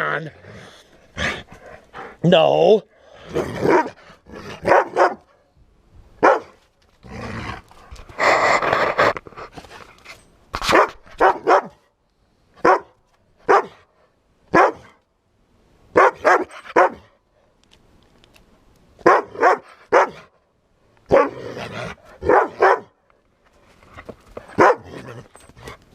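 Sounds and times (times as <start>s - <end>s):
dog barking: 3.6s - 4.0s, 4.6s - 5.3s, 6.2s - 6.6s, 10.7s - 11.8s, 12.6s - 13.8s, 14.5s - 14.9s, 16.0s - 17.1s, 19.0s - 20.3s, 21.1s - 21.4s, 22.2s - 23.0s, 24.6s - 24.9s.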